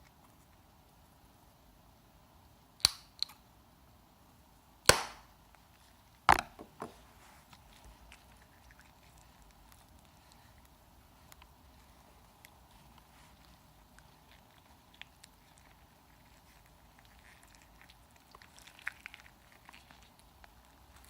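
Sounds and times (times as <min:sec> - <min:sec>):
sharp snaps: 0:02.8 - 0:03.4, 0:04.8 - 0:05.3.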